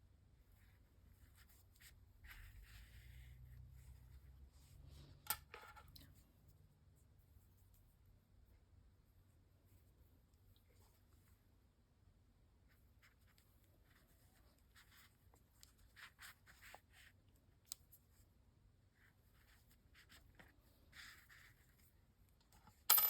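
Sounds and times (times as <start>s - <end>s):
yarn rustling through crochet: 0.5s - 5.2s.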